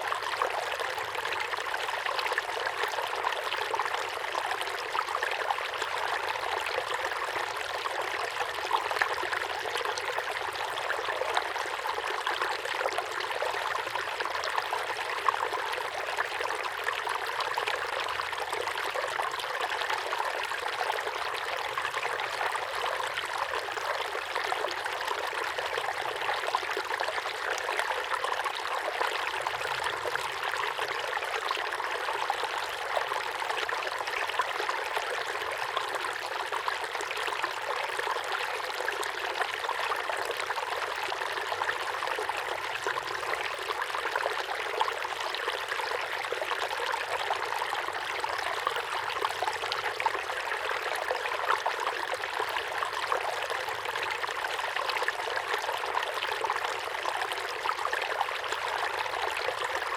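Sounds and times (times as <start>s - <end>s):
waterfall pouring into a pond: 0.0s - 59.9s.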